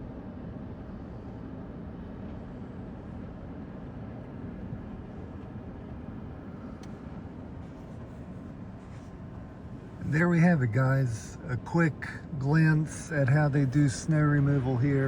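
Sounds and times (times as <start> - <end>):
diesel engines rumbling: 5.9 - 15.0.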